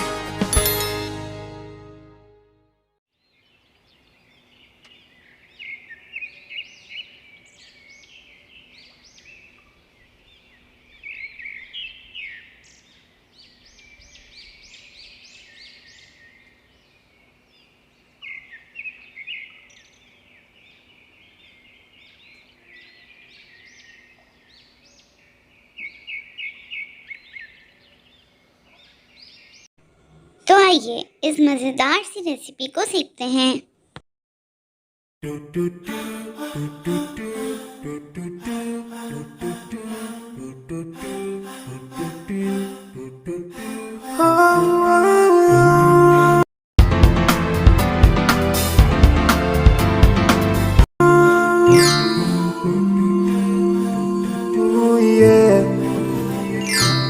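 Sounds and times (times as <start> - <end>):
birds chirping and singing: 3.2 - 29.7, 51.5 - 54.2, 54.8 - 57.0.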